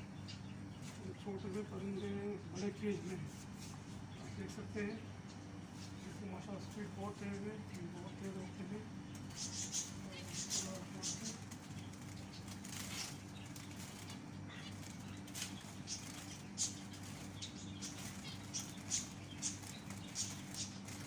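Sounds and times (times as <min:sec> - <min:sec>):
steady low hum: 0:00.0 - 0:21.0
bird wings flapping: 0:10.4 - 0:21.0.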